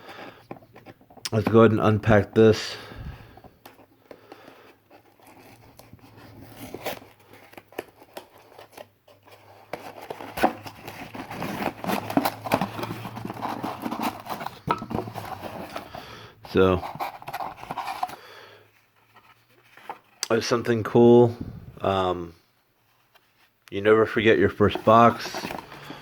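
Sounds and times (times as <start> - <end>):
cardboard packaging tearing and crinkling: 5.1 - 15.8.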